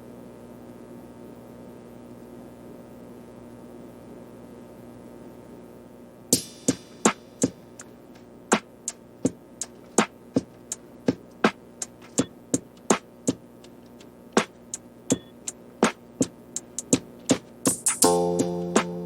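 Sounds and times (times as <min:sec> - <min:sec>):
faint steady hum: 0:00.0 - 0:19.0
clicky drum machine beat: 0:06.3 - 0:19.0.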